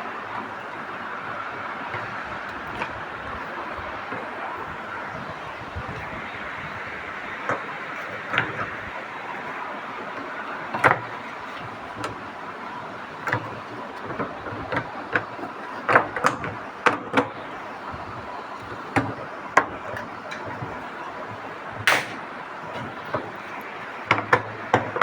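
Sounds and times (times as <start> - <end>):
tools knocking and clicking: 21.9 - 22.3.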